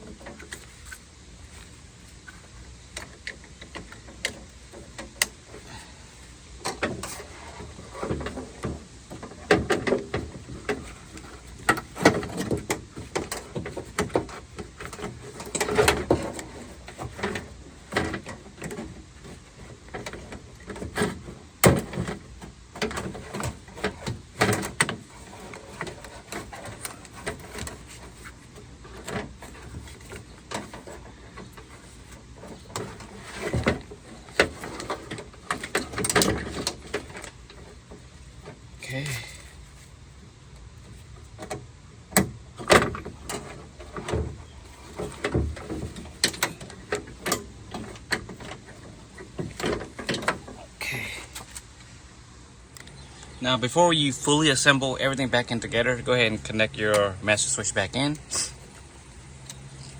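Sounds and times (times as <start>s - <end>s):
car door parts clicking and knocking: 8.0s - 28.2s.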